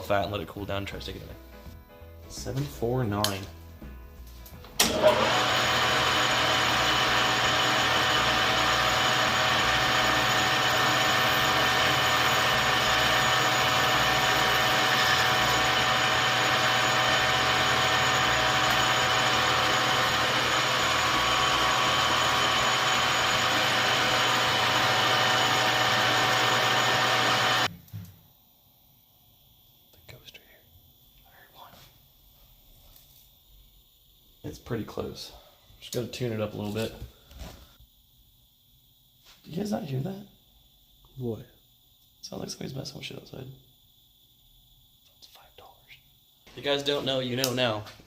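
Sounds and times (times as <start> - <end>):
metal lathe running: 4.8 - 27.7.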